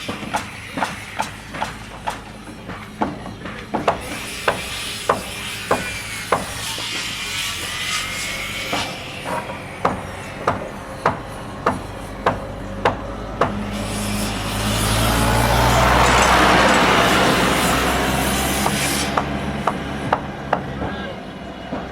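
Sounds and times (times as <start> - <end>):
hammer striking wood: 0.0 - 7.0, 8.7 - 13.7, 18.3 - 21.0.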